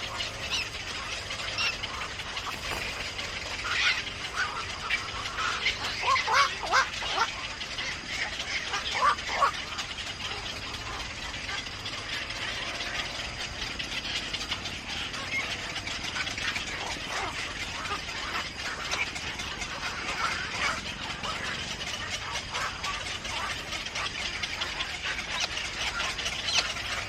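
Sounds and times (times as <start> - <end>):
birds chirping and squawking: 0.0 - 27.0
steady outdoor hiss: 0.0 - 27.0.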